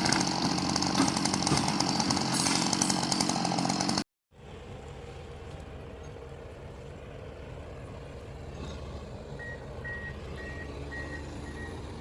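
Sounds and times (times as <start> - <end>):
diesel engine low rumble: 4.3 - 12.0
reversing alarm beeping: 9.4 - 12.0.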